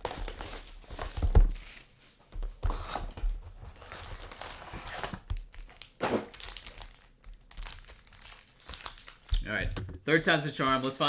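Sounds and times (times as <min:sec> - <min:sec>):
plastic wrap crinkling and tearing: 0:00.0 - 0:02.2, 0:02.8 - 0:11.0
knock: 0:09.6 - 0:10.1.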